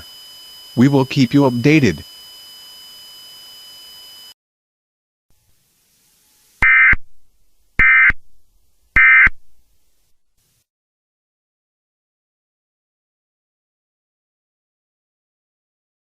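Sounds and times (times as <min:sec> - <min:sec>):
harsh digital data bursts: 0:00.0 - 0:04.3, 0:06.6 - 0:07.0, 0:07.8 - 0:08.2, 0:09.0 - 0:09.4
faint hiss: 0:05.4 - 0:06.6, 0:09.7 - 0:10.7.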